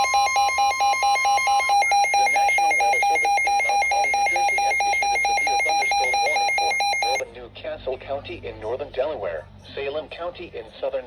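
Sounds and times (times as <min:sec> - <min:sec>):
two-pitch warbling alarm beep: 0:00.0 - 0:07.2
continuous warning tone: 0:00.0 - 0:07.3
broadcast voice speaking: 0:02.4 - 0:07.0.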